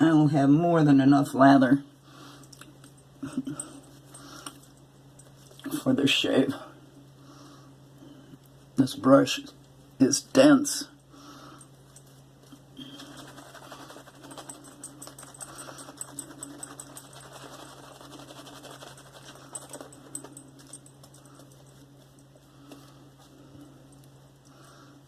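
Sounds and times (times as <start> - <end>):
shaving brush lathering soap: 12.8 - 20.8.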